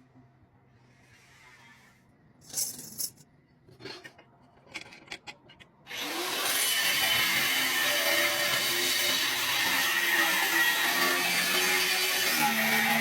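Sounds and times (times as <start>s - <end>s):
power tool running: 5.9s - 13.0s.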